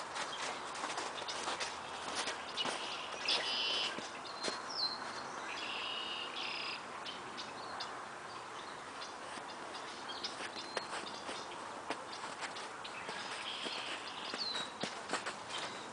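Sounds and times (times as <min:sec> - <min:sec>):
birds chirping: 0:00.0 - 0:15.9.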